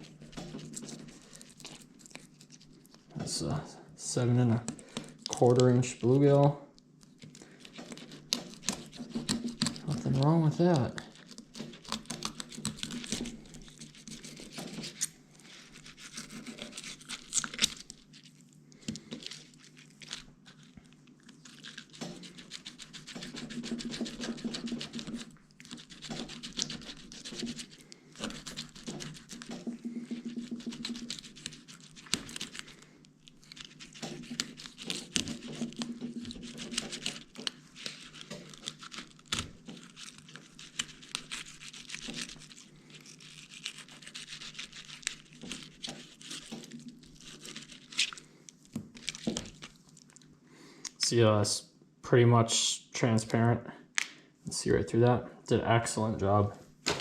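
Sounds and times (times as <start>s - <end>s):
knife cutting fish fillet: 7.7s - 10.1s, 11.0s - 17.9s, 21.4s - 32.8s, 33.4s - 49.7s.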